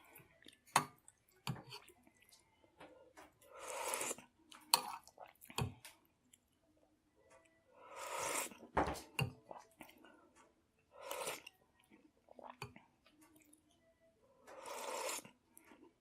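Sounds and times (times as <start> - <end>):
slurping soup from spoon: 3.4 - 5.7, 7.8 - 8.6, 10.9 - 11.5, 14.5 - 15.4.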